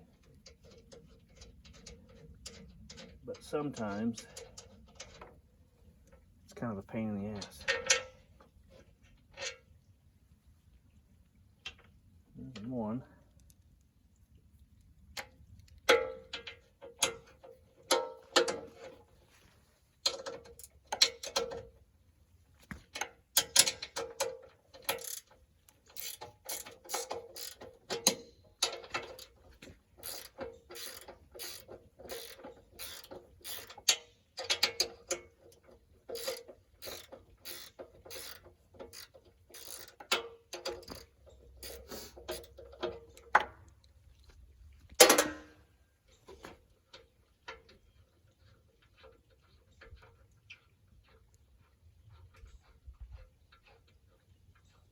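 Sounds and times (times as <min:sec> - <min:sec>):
ratchet wrench clicking: 0:24.9 - 0:25.3, 0:25.9 - 0:28.3, 0:30.0 - 0:34.8, 0:36.1 - 0:42.6.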